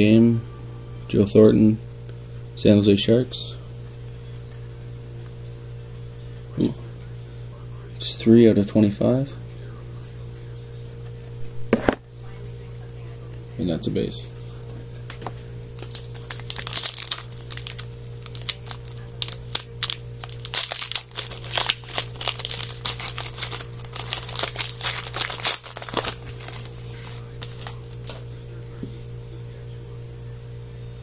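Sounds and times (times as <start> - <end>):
plastic foil wrapper crinkling: 15.8 - 28.2.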